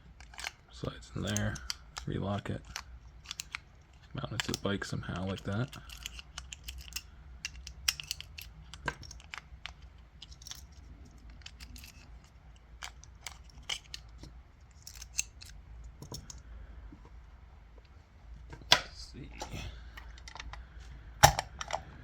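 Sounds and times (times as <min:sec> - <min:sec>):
steady low hum: 0:00.0 - 0:22.0
metallic clicks and taps of lock: 0:01.2 - 0:03.6, 0:05.3 - 0:10.7, 0:12.8 - 0:16.4, 0:21.2 - 0:21.8.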